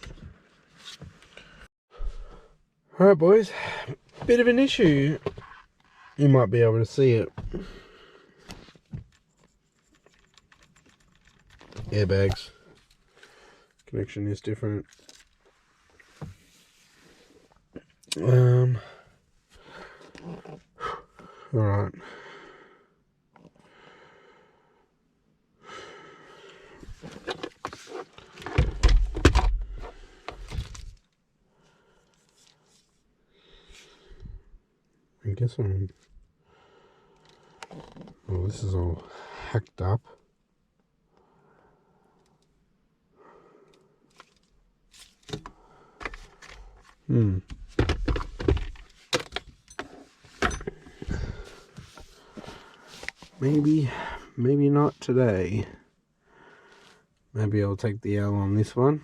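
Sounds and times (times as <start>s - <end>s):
hands rustling with parts: 8.4s - 13.1s
tools and parts clicking and rattling: 9.0s - 13.0s, 44.1s - 52.1s.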